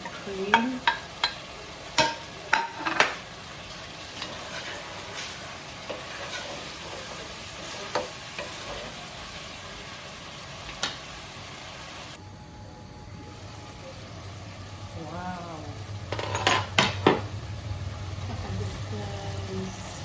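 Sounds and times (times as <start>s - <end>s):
curry sizzling in a pot: 0.0s - 12.2s, 13.3s - 20.0s.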